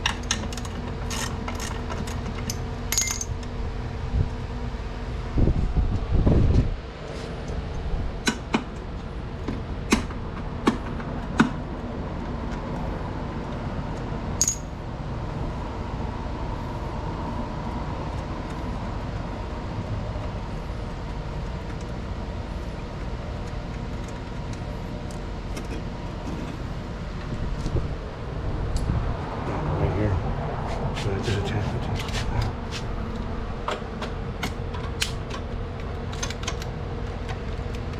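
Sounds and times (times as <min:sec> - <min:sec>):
steady low hum: 0:00.0 - 0:37.9
metal clinks and taps: 0:02.4 - 0:03.3, 0:14.4 - 0:14.7
ringing metal clink: 0:02.9 - 0:03.3, 0:14.4 - 0:14.7.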